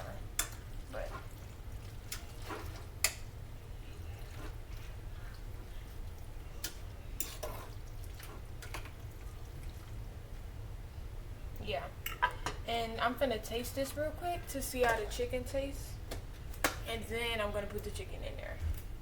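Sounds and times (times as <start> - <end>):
spoon stirring food in pot: 0.3 - 3.4, 4.0 - 9.9.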